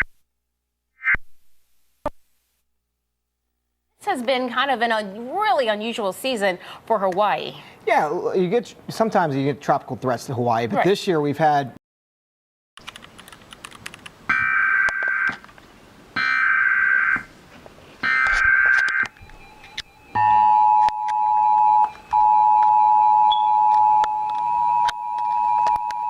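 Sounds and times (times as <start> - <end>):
two-tone attention signal: 19.2 - 26.0.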